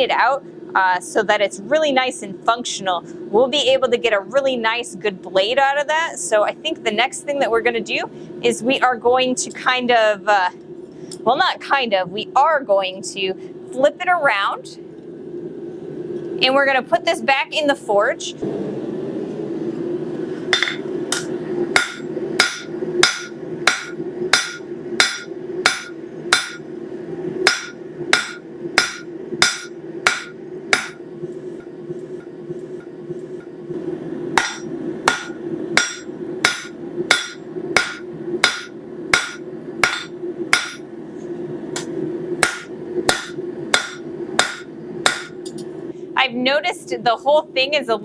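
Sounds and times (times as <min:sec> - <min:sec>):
steady hum: 0:00.0 - 0:48.0
hammer striking metal on anvil: 0:20.5 - 0:26.6, 0:27.5 - 0:31.0, 0:34.4 - 0:40.8, 0:41.8 - 0:45.4.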